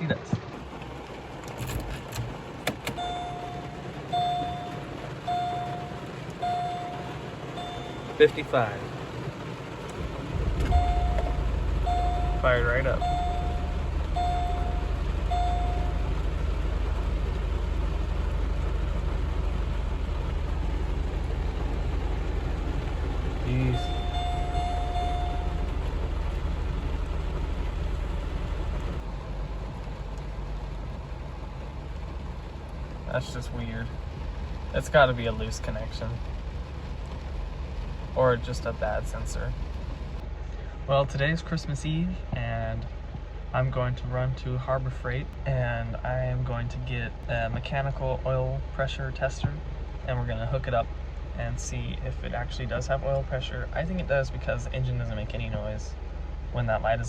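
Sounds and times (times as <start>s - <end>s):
in-cabin road and engine noise: 0.0s - 57.0s
rain: 0.0s - 57.0s
car warning chime beeping: 2.6s - 8.8s, 10.5s - 16.6s, 23.3s - 26.4s
steady tone: 10.4s - 16.2s.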